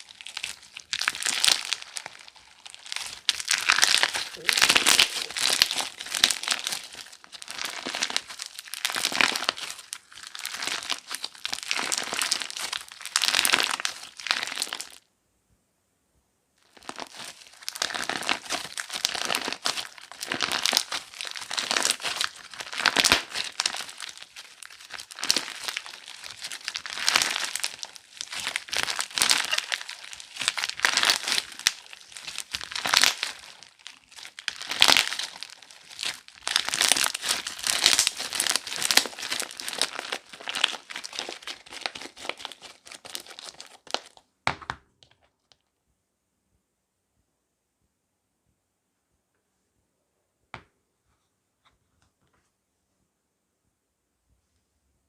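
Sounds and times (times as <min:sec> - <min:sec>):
crunchy slime crackling: 0:00.0 - 0:15.0, 0:16.6 - 0:44.2.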